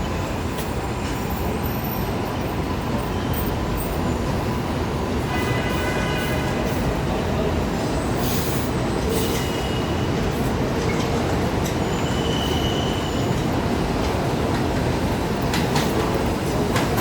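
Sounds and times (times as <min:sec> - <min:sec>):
subway train wheels rumbling: 0:00.0 - 0:17.0
high wheel squeals: 0:11.7 - 0:13.5.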